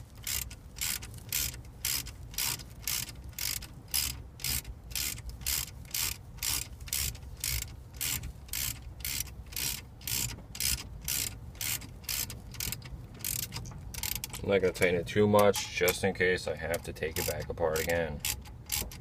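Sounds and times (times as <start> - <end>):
hand ratchet wrench ratcheting: 0.0 - 14.5, 16.7 - 19.0.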